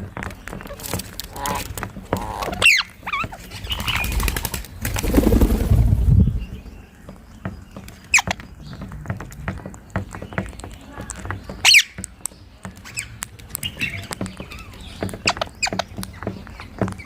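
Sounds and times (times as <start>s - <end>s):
parakeets calling shrilly: 0.3s - 4.5s
low rumbling noise: 4.1s - 7.0s.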